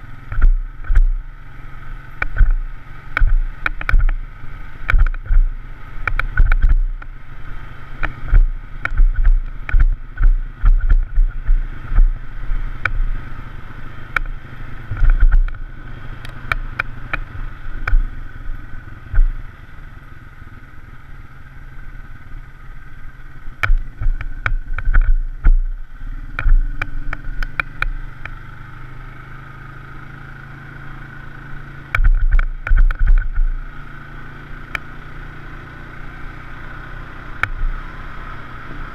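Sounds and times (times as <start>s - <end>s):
off-road vehicle engine drone: 0.0s - 38.9s
sharp knocks and low thumps: 0.3s - 1.3s, 2.2s - 7.2s, 8.0s - 13.3s, 14.1s - 15.7s, 16.3s - 18.1s, 19.0s - 19.4s, 23.6s - 25.8s, 26.4s - 28.4s, 31.9s - 33.6s, 37.4s - 37.8s.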